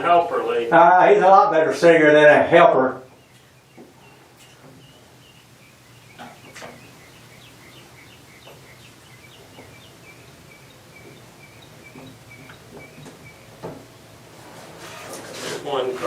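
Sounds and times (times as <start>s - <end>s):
steady low hum: 0.0s - 14.7s
small bird chirping: 3.0s - 13.6s
light knocks: 11.9s - 13.9s.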